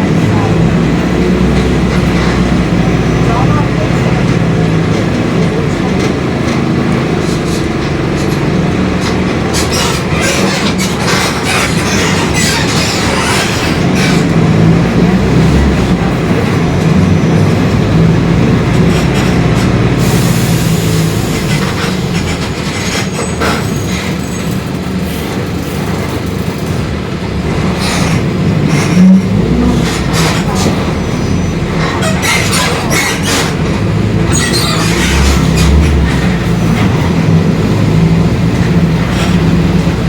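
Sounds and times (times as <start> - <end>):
differential growling: 0.0 - 20.1
bus body rattling: 0.0 - 40.0
bus engine running: 0.0 - 40.0.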